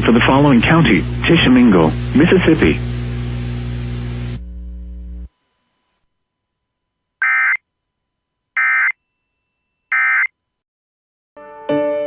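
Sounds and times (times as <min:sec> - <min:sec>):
short digital data bursts: 0:07.2 - 0:07.6, 0:08.6 - 0:09.0, 0:09.9 - 0:10.3.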